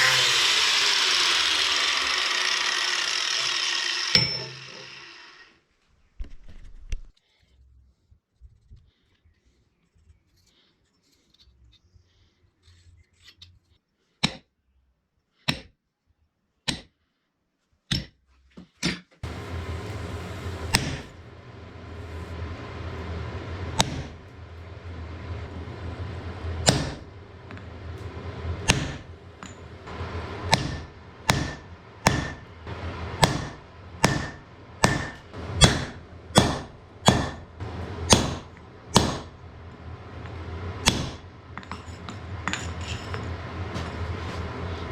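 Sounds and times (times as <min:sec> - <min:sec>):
hammer blows on iron anvil: 0:00.0 - 0:05.0, 0:19.2 - 0:44.9
steady rushing noise: 0:19.2 - 0:44.9.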